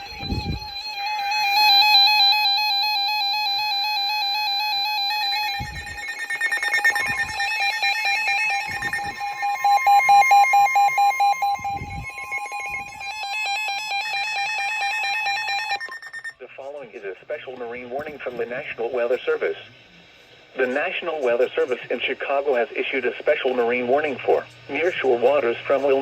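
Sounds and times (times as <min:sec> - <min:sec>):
fast pulsing beep: 0:00.0 - 0:16.4
weather radio alarm tones: 0:00.0 - 0:19.6.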